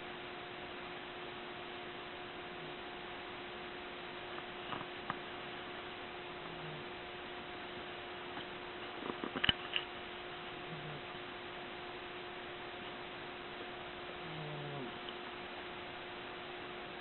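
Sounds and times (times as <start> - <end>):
electrical hum: 0.0 - 17.0
cat snoring: 2.5 - 2.9, 6.4 - 7.0, 10.5 - 11.2, 14.1 - 15.1.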